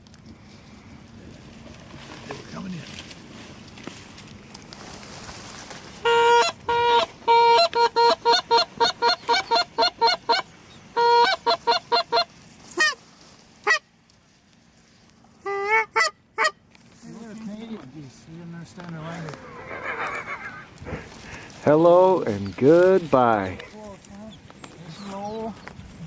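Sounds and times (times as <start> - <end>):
goose honking: 6.0 - 13.0, 13.6 - 13.9, 15.4 - 16.6.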